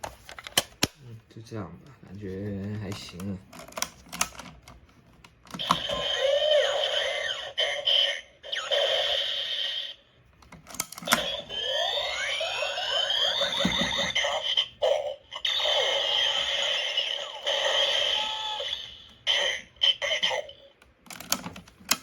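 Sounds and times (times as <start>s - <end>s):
warbling electronic toy tones: 11.1s - 20.6s.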